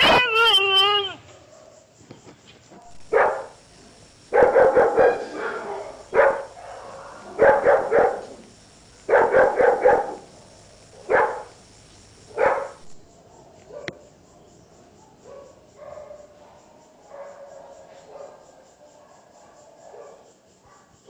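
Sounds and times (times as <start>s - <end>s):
dog barking: 2.8s - 3.6s, 4.3s - 8.4s, 9.1s - 10.3s, 11.0s - 11.5s, 12.3s - 14.1s, 15.0s - 21.0s.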